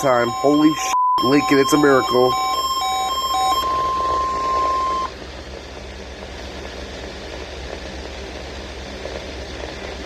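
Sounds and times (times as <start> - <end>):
steady alarm tone: 0.0 - 5.1
receiver low hiss and hum: 0.0 - 10.0.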